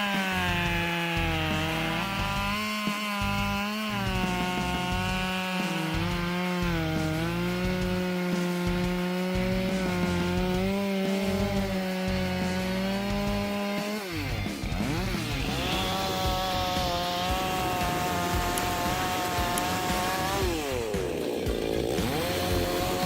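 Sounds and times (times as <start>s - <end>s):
chainsaw cutting wood: 0.0s - 23.0s.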